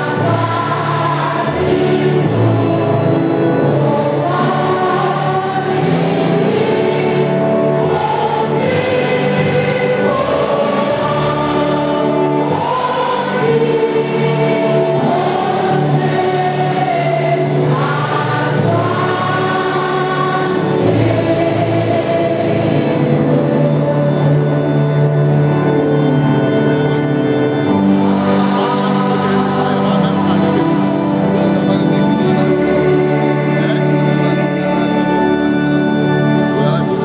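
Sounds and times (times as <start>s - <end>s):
steady bass line: 0.0s - 34.0s
choir singing: 0.0s - 37.0s.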